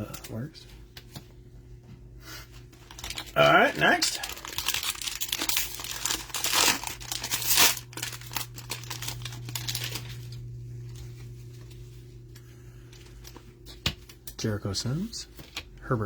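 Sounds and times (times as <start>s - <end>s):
low steady hum: 0.0s - 16.0s
packaging crinkling and tearing: 2.7s - 11.0s.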